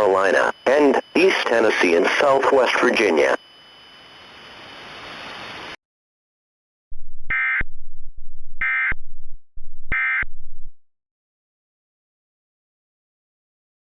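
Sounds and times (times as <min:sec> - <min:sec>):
digital data tone bursts: 0:00.0 - 0:05.8, 0:07.3 - 0:07.6, 0:08.6 - 0:09.0, 0:09.9 - 0:10.3.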